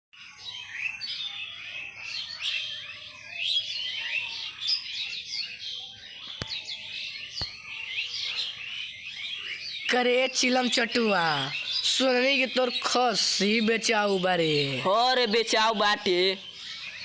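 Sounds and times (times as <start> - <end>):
small birds chirping: 0.2 - 17.0
sharp clicks: 6.3 - 6.7.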